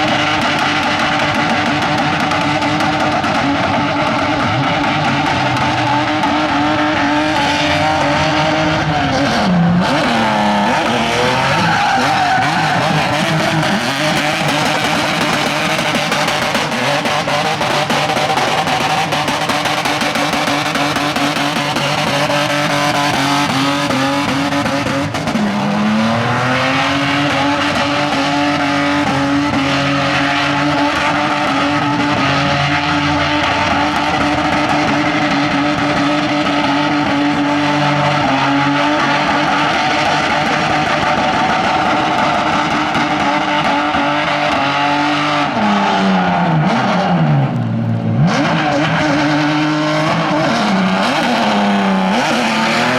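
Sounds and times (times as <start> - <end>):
car engine at high revs: 0.0 - 52.9
tyres squealing: 10.1 - 16.8.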